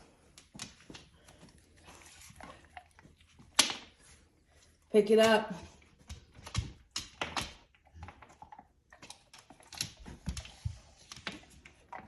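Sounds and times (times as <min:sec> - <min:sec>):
dog claws clicking and tapping: 0:05.2 - 0:12.0.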